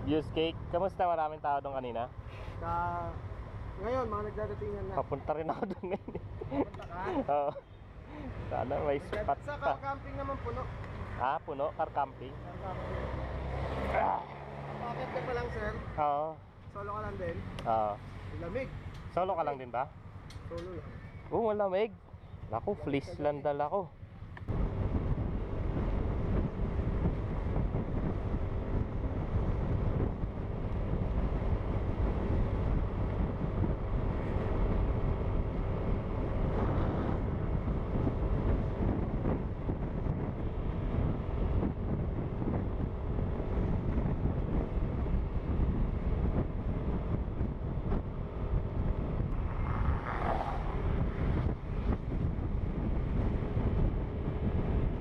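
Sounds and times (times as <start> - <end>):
wind buffeting microphone: 24.0 - 55.0.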